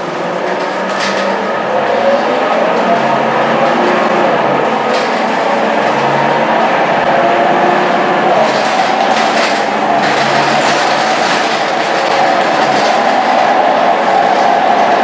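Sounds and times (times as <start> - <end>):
bus diesel engine under load: 0.0 - 15.0
gearbox whine: 0.8 - 15.0
interior rattles: 8.3 - 14.7.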